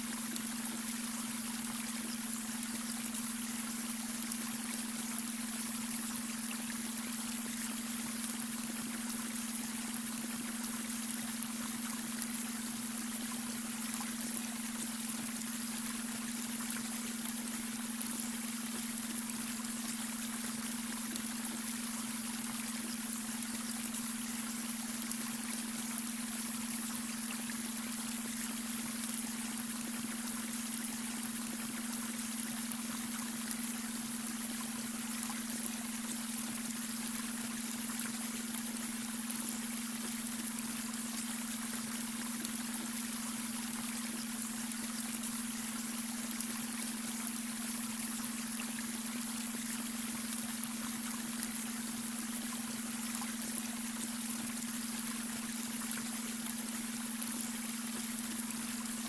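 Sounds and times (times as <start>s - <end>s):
brook water trickling: 0.0s - 59.0s.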